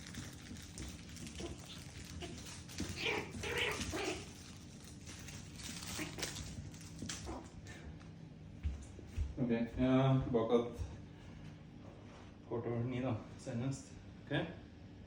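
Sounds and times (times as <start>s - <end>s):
small dog vocalising: 1.4s - 4.4s.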